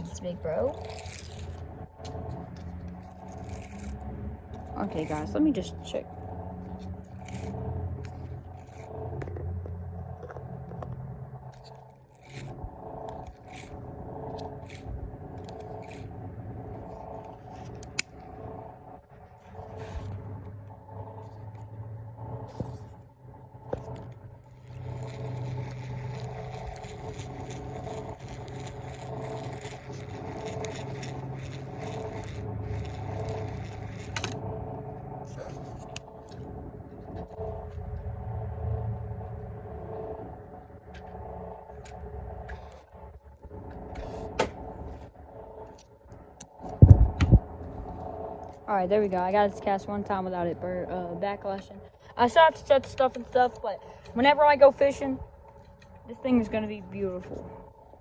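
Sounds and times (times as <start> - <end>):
fishing reel scraping and whirring: 0.0 - 9.3, 11.4 - 18.8, 23.6 - 36.5
steady tonal hum: 0.0 - 58.0.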